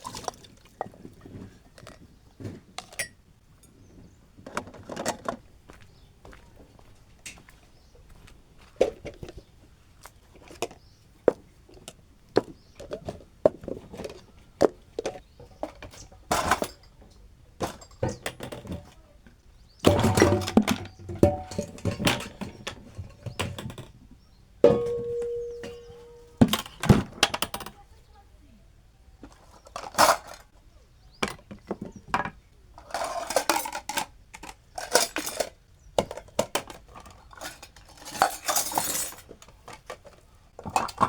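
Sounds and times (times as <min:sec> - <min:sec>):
dishes and pots clinking: 0:19.8 - 0:23.9, 0:24.6 - 0:27.0, 0:37.4 - 0:39.3
metal dish ringing: 0:19.9 - 0:22.5, 0:24.6 - 0:26.5.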